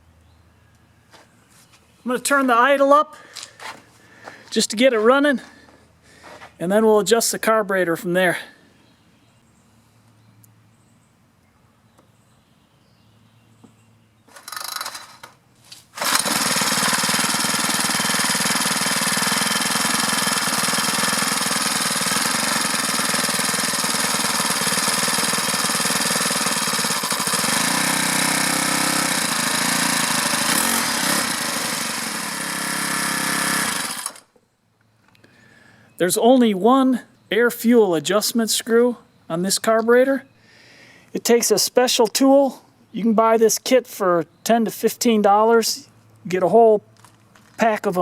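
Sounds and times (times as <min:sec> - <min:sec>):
pull cord starting: 0:14.3 - 0:34.4
string trimmer engine running: 0:14.3 - 0:34.4.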